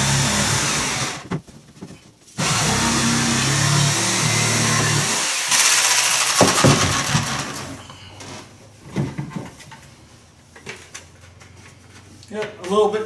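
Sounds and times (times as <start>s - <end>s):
jigsaw cutting wood: 0.0s - 1.3s, 2.4s - 7.8s
loud rasping: 0.0s - 1.3s, 2.4s - 7.9s
knocks: 6.4s - 7.8s.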